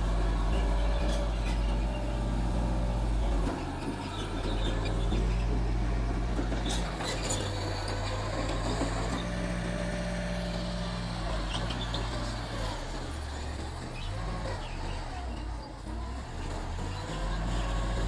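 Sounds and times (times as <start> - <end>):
bulldozer diesel engine running: 0.0 - 18.0.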